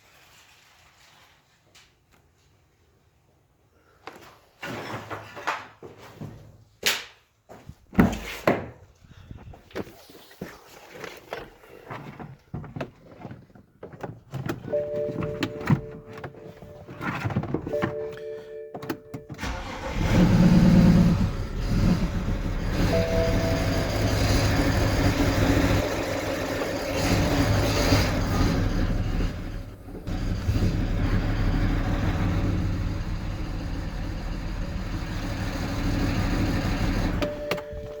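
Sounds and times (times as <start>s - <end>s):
car engine cranking and running: 14.0s - 38.0s
electronic chime tones: 17.7s - 19.4s, 22.8s - 25.6s, 37.2s - 38.0s.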